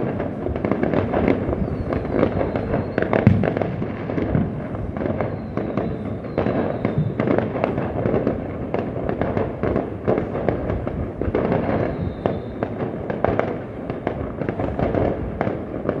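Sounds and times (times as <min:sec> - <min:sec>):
fireworks bangs and crackles: 0:00.0 - 0:16.0
faint high whistle: 0:01.6 - 0:03.2, 0:05.2 - 0:07.3, 0:11.8 - 0:12.7.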